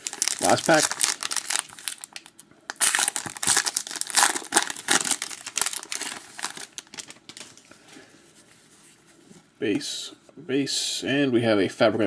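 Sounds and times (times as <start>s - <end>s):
wrapper tearing and crinkling: 0.0s - 7.7s.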